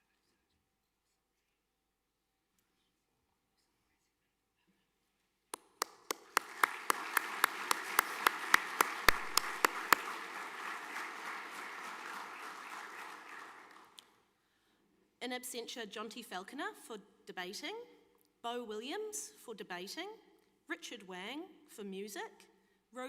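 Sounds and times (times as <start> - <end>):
loud steady single claps: 5.5 - 14.1
audience applause: 5.8 - 14.0.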